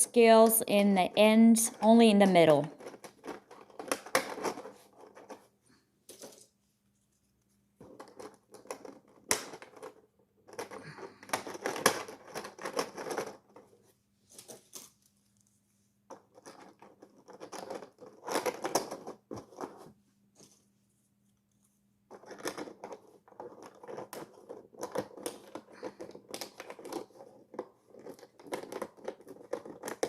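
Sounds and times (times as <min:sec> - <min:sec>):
plastic scales clicking and rattling: 0:07.9 - 0:13.7.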